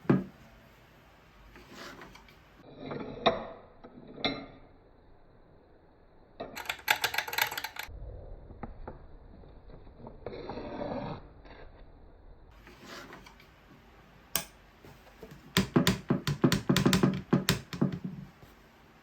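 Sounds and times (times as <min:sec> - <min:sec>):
sharp wooden knocks and clicks: 0:15.3 - 0:18.2.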